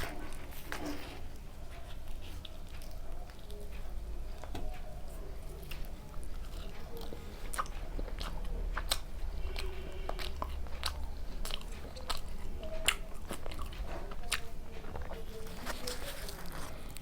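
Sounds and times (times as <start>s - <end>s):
biting and chewing food: 0.0s - 17.0s.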